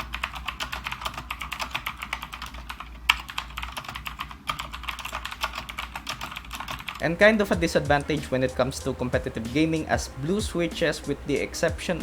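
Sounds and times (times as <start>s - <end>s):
clicky mechanical keyboard typing: 0.0s - 7.0s.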